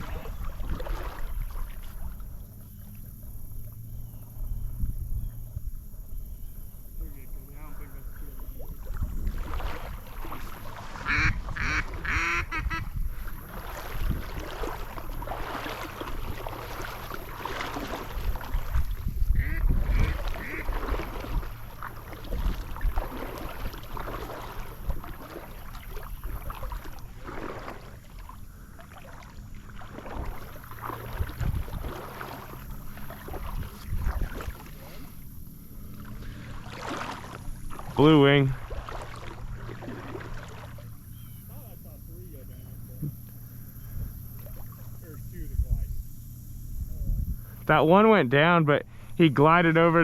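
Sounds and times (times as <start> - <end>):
water sloshing: 0.0 - 50.0
wind: 0.0 - 50.0
duck quacks: 10.9 - 12.9, 19.3 - 20.9.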